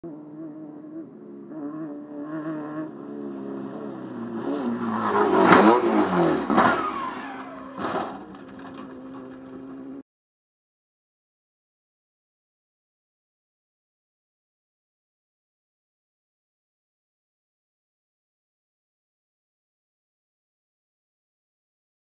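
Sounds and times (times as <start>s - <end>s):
race car engine revving: 0.0s - 10.0s
car crash impacts: 4.6s - 9.8s.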